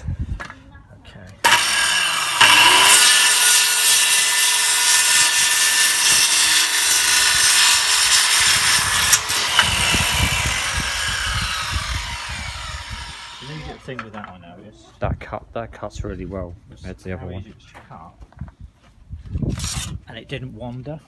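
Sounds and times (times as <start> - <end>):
circular saw cutting wood: 1.4 - 14.0.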